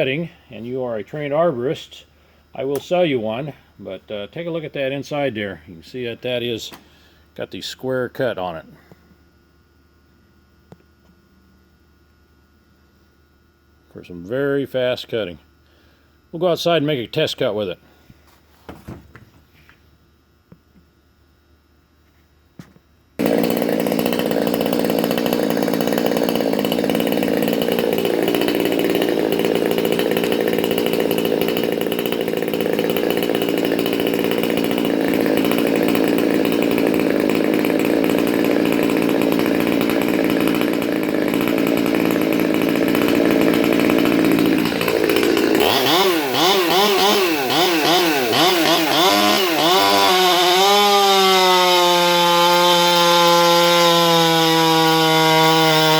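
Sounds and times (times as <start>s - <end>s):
chainsaw cutting wood: 22.6s - 55.9s.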